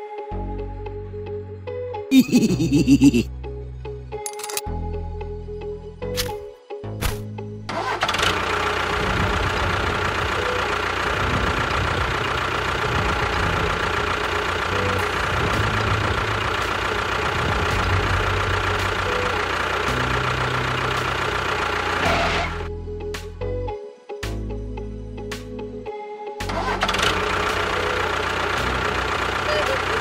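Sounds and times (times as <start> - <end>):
motor running loudly: 8.0 - 22.7, 26.5 - 30.0.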